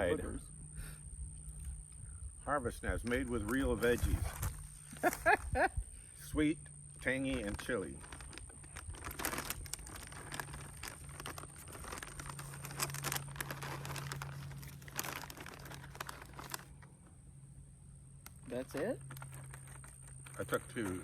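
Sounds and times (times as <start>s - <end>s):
plastic bag crinkling: 7.2s - 16.9s, 18.2s - 21.0s.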